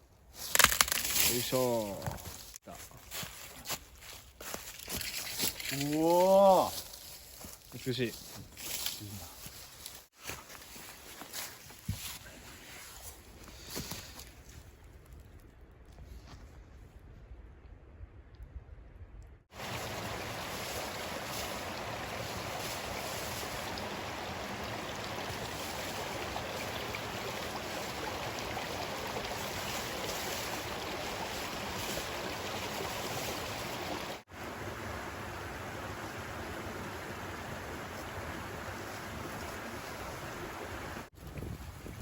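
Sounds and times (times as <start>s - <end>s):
steady rushing outdoor noise: 19.6s - 41.1s.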